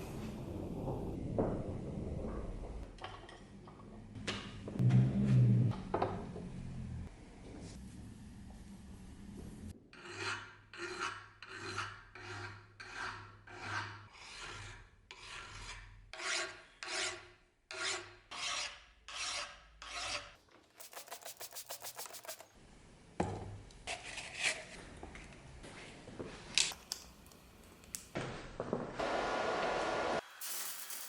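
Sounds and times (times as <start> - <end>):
file rasping on axe head: 10.0 - 21.9.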